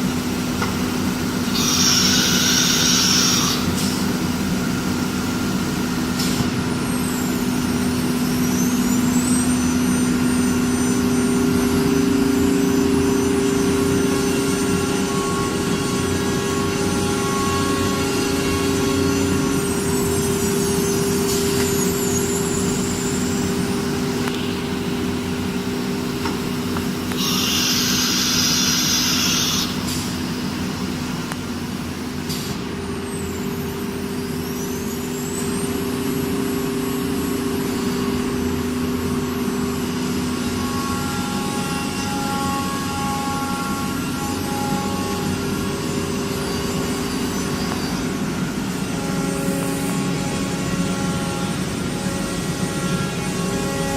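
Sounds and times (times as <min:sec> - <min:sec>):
spindle whine: 0:00.0 - 0:32.0
machine hum: 0:00.0 - 0:53.9.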